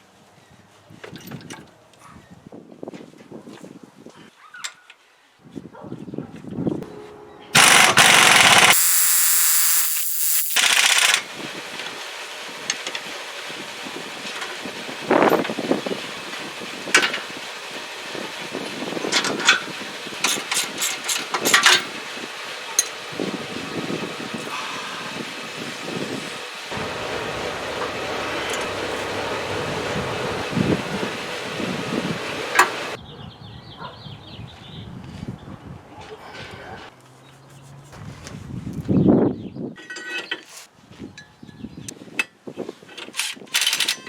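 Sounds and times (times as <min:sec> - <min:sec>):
mechanical hum: 0:06.8 - 0:33.0
power tool running: 0:07.6 - 0:33.0
metallic clanks of tools: 0:39.8 - 0:40.5.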